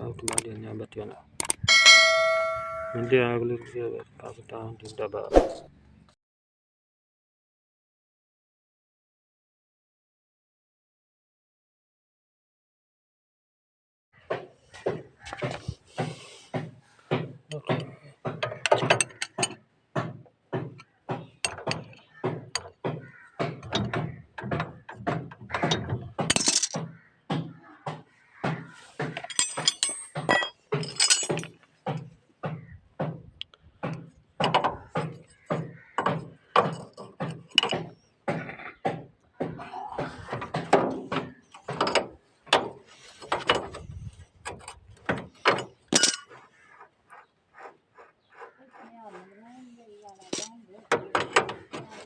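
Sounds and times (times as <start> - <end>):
metallic clanks and knocks: 1.4 - 3.2, 17.1 - 20.8, 21.4 - 27.5, 28.5 - 33.2, 33.8 - 38.5, 40.2 - 46.3, 50.3 - 52.0
metal hand tools clanking: 1.7 - 3.2, 29.2 - 31.6, 45.5 - 46.4.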